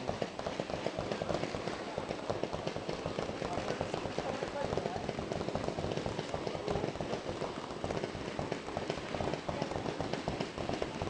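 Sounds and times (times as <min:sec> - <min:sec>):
fireworks crackling: 0:00.0 - 0:11.0.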